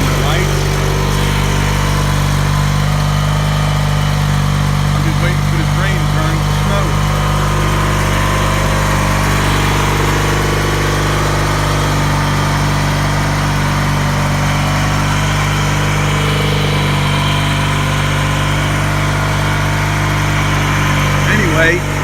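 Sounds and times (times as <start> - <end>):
lawn tractor engine running: 0.0 - 22.0.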